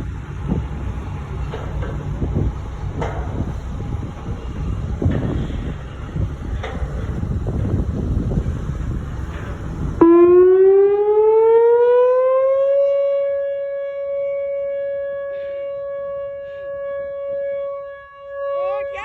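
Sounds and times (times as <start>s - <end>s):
wind buffeting microphone: 0.0s - 10.4s
tornado warning siren wailing: 10.0s - 19.0s.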